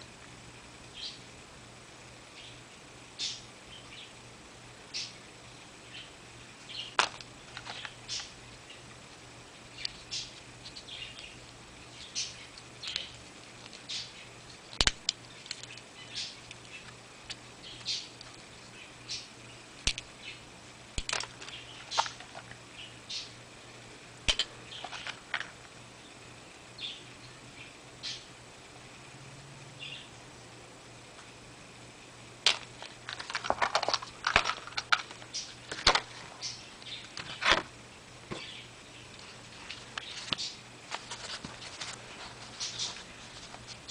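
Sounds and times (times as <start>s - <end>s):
packaging rustling and scraping: 7.0s - 8.3s, 24.7s - 25.6s, 32.5s - 36.3s, 39.2s - 43.9s
small objects clicking and rattling: 7.0s - 8.3s, 12.2s - 18.6s, 21.0s - 22.6s, 24.3s - 25.7s, 32.4s - 36.2s.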